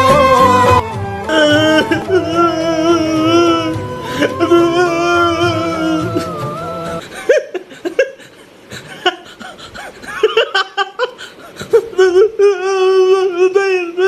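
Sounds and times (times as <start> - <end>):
long wavering vocal note: 0.0 - 7.0
playful vocal sounds: 0.0 - 7.0
person laughing: 1.3 - 13.0.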